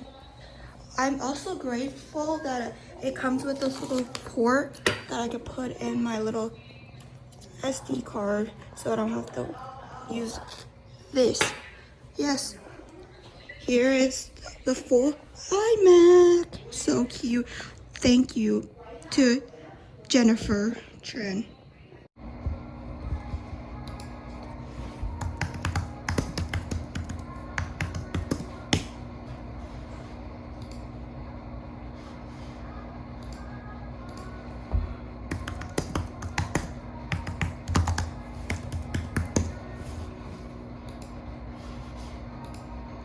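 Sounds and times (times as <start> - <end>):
quiet background music: 0.0 - 43.0
computer keyboard typing: 25.2 - 28.9, 35.3 - 39.6.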